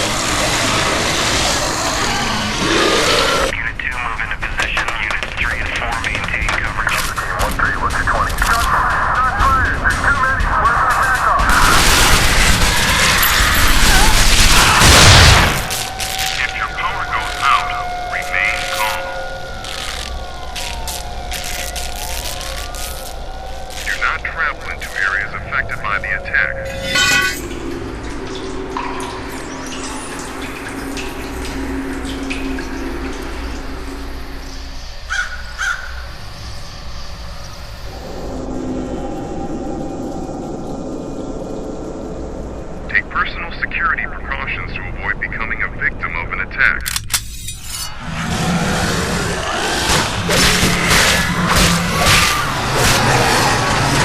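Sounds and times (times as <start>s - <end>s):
low steady hum: 15.1s - 35.1s
crow cawing: 35.1s - 36.0s
wavering high sounds: 37.7s - 42.9s.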